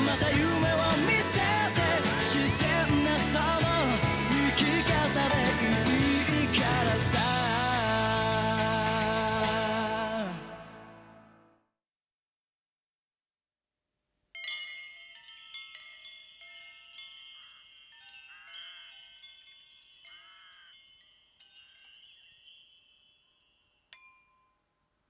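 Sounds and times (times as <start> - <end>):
wind chimes tinkling: 0.0 - 7.7, 14.4 - 24.8.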